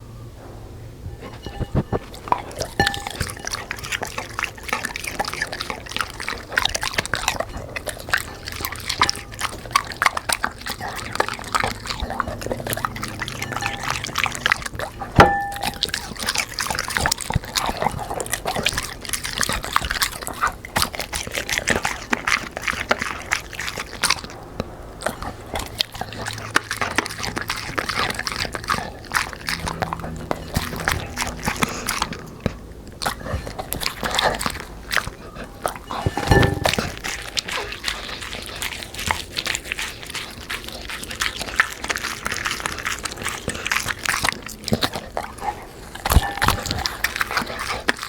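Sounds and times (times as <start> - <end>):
dog chewing and lip-smacking: 0.0 - 48.0
sharp ringing knock: 15.2 - 15.8.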